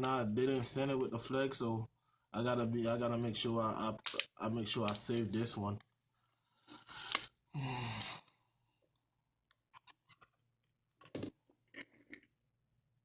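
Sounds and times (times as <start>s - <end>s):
sharp clicks and cracks: 4.0s - 5.9s.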